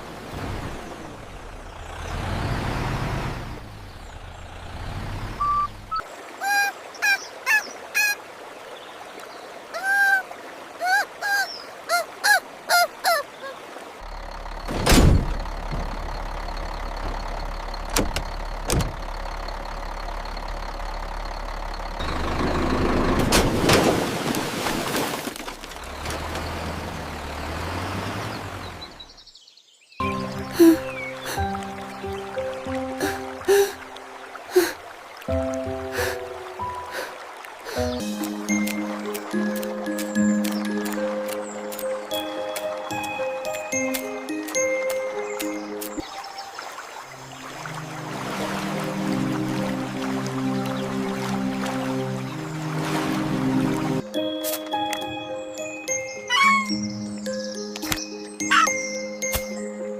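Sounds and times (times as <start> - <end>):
cartoon duck quacking: 56.3 - 56.7.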